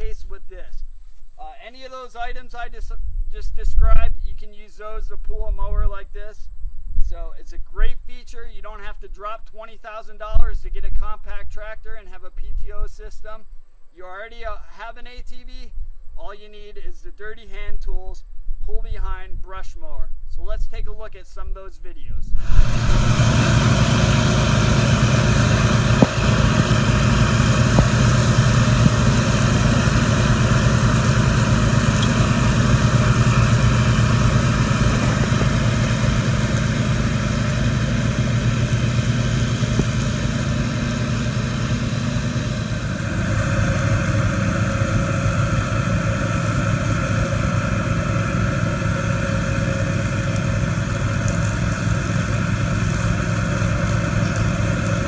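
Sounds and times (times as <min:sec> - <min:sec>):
mower engines running: 0:22.4 - 0:55.0.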